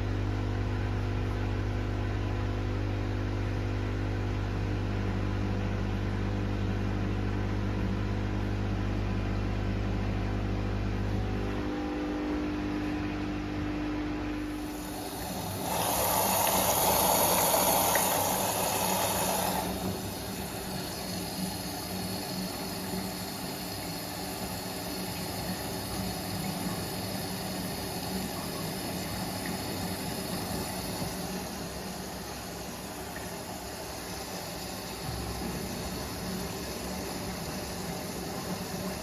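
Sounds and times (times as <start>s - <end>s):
washing machine running: 0.0s - 39.0s.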